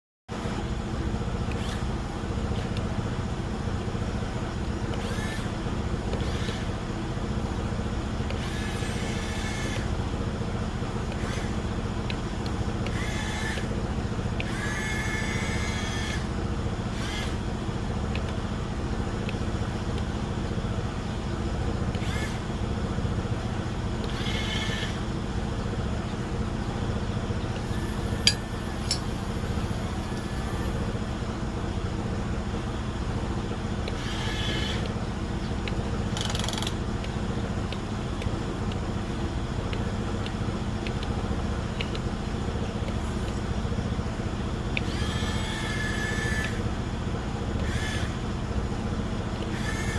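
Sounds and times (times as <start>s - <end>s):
motor vehicle rumbling: 0.3s - 49.9s
sharp click: 28.2s - 29.1s, 35.6s - 38.8s.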